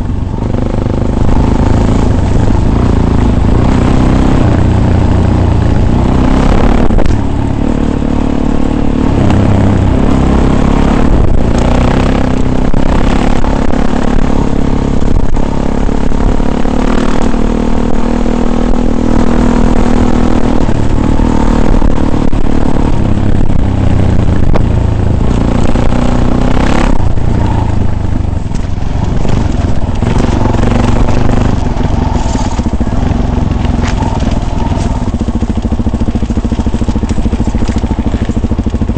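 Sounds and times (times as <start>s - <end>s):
off-road engine revving: 0.0s - 38.9s
knocks and scraping clatter: 28.4s - 38.9s.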